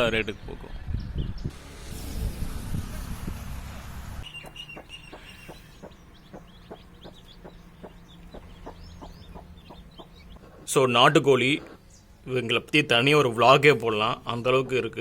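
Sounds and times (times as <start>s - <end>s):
hen clucking: 4.2s - 10.7s
chicks peeping: 4.2s - 10.8s.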